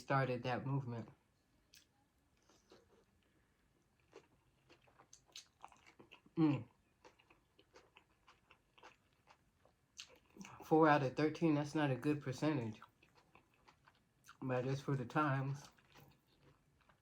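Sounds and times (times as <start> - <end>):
chewing and mouth sounds: 1.7 - 10.6, 12.7 - 14.4, 15.6 - 17.0.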